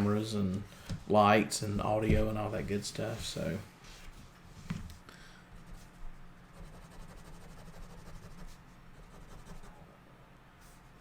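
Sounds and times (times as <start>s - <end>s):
low electrical hum: 0.0s - 11.0s
scratchy drawing strokes: 5.6s - 9.8s.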